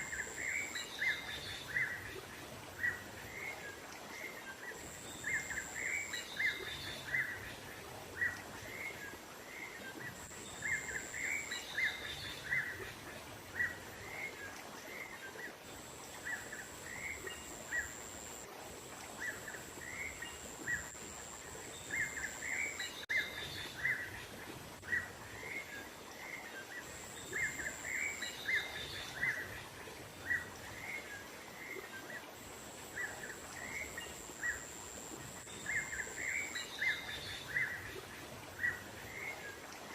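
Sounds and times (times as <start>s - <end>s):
nature ambience: 0.0s - 39.9s.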